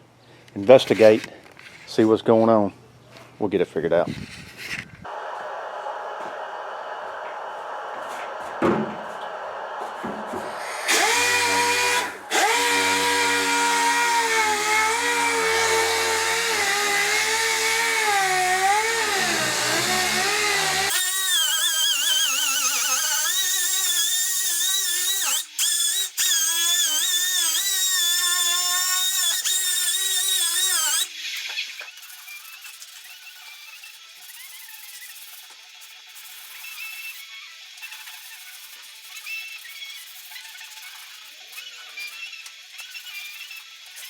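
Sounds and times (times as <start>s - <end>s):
sander whining on sheet metal: 5.1s - 31.1s.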